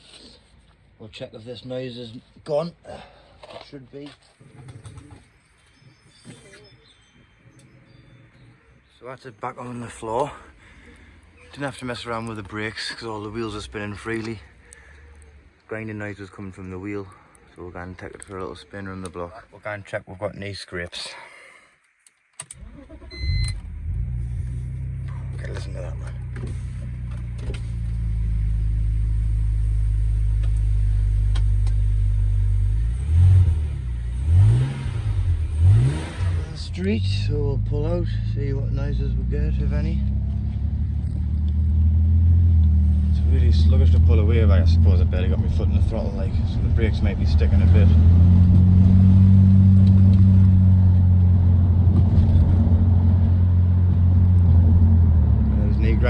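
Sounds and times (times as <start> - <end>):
car engine idling and revving: 22.6 - 56.0.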